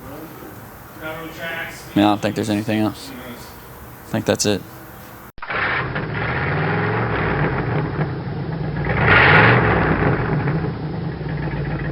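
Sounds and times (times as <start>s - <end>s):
engine revving: 5.5s - 11.9s.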